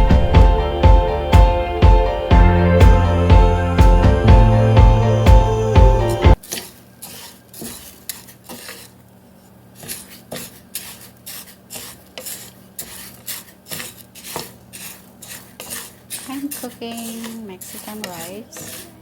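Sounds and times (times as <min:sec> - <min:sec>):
spoon scraping rice in a pot: 0:06.4 - 0:19.0.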